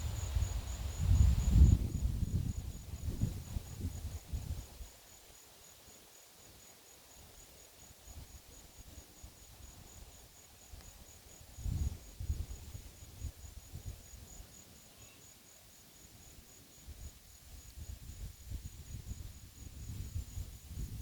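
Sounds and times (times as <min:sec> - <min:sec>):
wind buffeting microphone: 0:00.0 - 0:04.8, 0:11.5 - 0:14.1, 0:17.8 - 0:21.0
insects chirping: 0:00.0 - 0:21.0.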